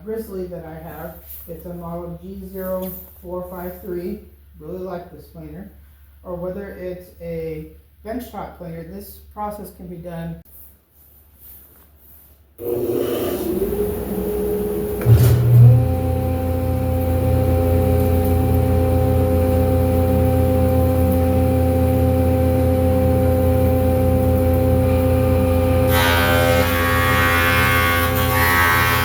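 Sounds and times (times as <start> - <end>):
thickness planer running: 12.6 - 29.0.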